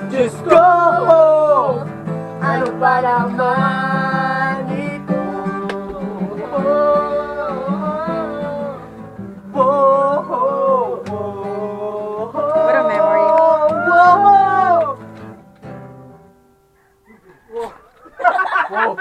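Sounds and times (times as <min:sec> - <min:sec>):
people singing: 0:00.0 - 0:15.0
acoustic guitar: 0:00.0 - 0:16.8.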